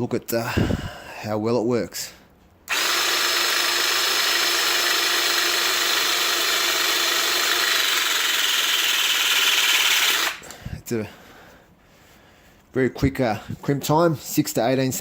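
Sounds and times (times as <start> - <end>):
hydraulic crimper motor pump: 2.7 - 10.5.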